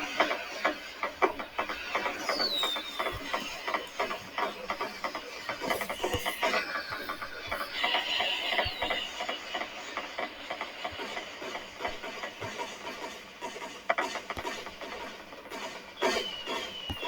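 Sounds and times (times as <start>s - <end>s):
falling firework whistle: 16.0s - 17.0s.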